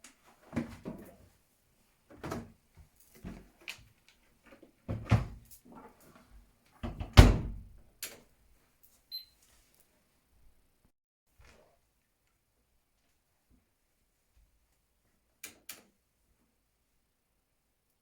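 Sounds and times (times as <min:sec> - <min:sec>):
washing machine door knocks: 0:06.8 - 0:07.7.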